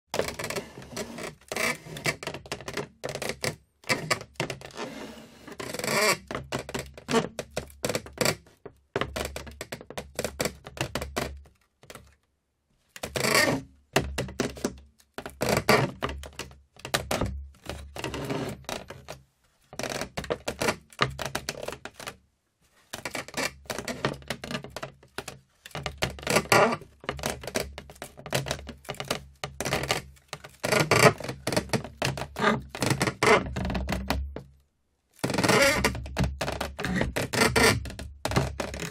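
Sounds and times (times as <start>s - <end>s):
wood creaking and crackling: 22.9s - 34.5s, 35.2s - 38.9s.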